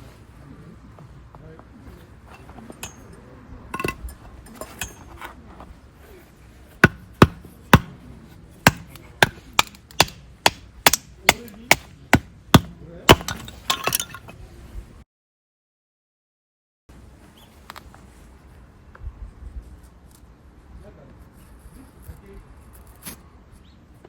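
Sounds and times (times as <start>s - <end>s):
sharp tool strikes: 6.8s - 8.0s, 8.6s - 14.1s.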